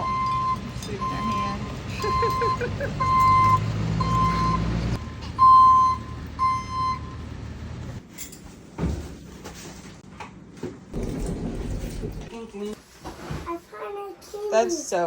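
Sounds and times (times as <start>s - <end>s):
truck backup alarm beeping: 0.0s - 7.5s
truck engine running: 0.0s - 8.0s.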